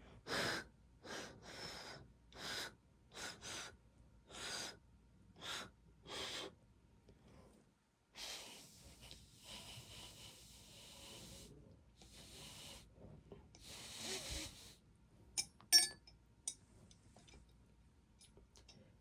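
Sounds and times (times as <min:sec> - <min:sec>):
metallic clinks: 0:15.4 - 0:16.6.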